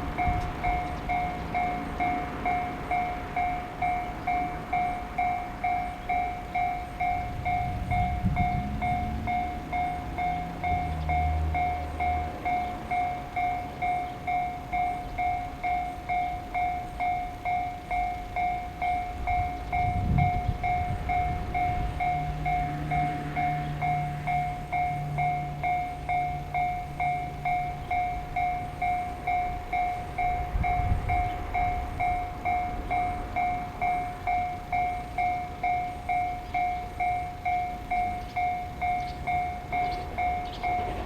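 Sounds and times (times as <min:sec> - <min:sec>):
level crossing warning bell: 0:00.0 - 0:41.0
train rumbling past: 0:00.0 - 0:41.0.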